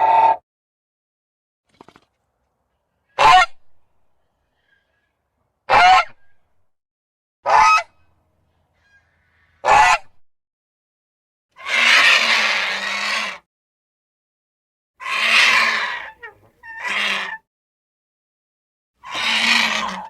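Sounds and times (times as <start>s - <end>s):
dinosaur calls: 15.0s - 17.4s, 19.0s - 20.0s.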